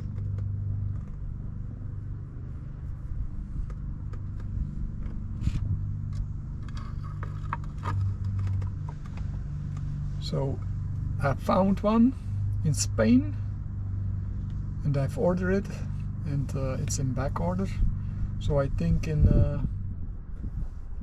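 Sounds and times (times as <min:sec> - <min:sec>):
handling clicks and scrapes: 0:00.0 - 0:01.5, 0:02.8 - 0:10.7
low machine hum: 0:00.0 - 0:21.0.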